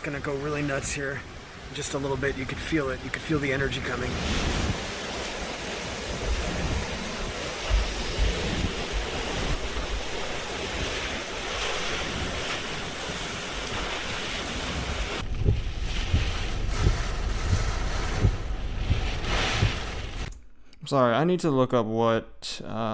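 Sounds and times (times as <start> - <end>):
hurricane wind rushing: 0.0 - 20.4
wind thumping microphone: 2.7 - 20.3.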